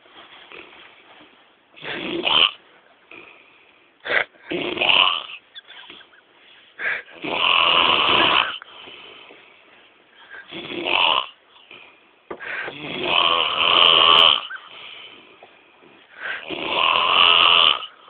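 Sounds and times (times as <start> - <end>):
man snoring and snorting: 1.8 - 3.4, 4.0 - 5.4, 6.8 - 8.7, 10.4 - 11.9, 12.6 - 15.0, 16.2 - 18.0.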